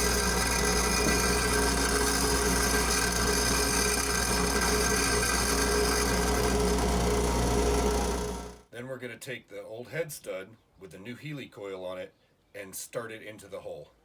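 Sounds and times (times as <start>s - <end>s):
electric grinder grinding steel: 0.0s - 8.6s.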